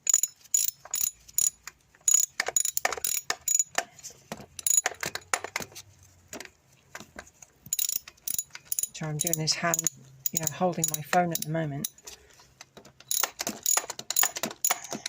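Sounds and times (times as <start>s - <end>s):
socket ratchet clicking: 0.0s - 3.8s, 4.6s - 5.6s, 7.7s - 12.0s, 12.9s - 15.0s.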